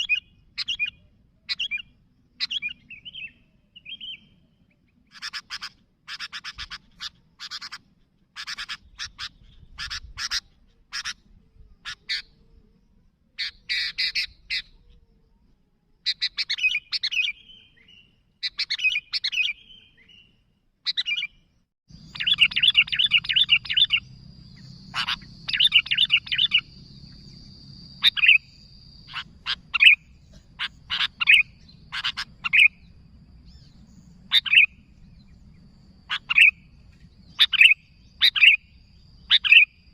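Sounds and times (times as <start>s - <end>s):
bird chattering and chirping: 0.0s - 4.3s, 5.1s - 12.4s, 13.4s - 14.8s, 20.8s - 39.9s
faint steady high tone: 21.9s - 31.9s
low hum: 21.9s - 39.3s.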